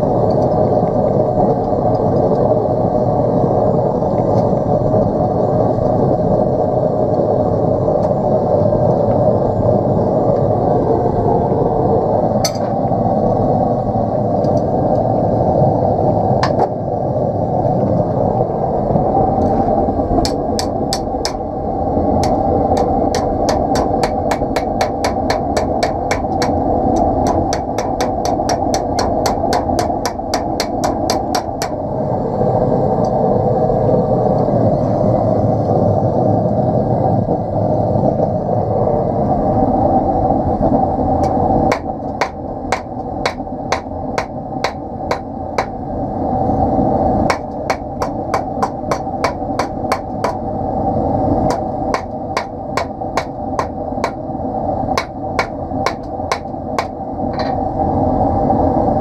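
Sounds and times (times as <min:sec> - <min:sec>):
forge rushing noise: 0:00.0 - 0:59.0
hammer striking steel: 0:12.4 - 0:12.7, 0:20.2 - 0:21.4, 0:22.2 - 0:31.8, 0:41.2 - 0:45.8, 0:47.3 - 0:50.4, 0:51.5 - 0:54.2, 0:55.0 - 0:57.6.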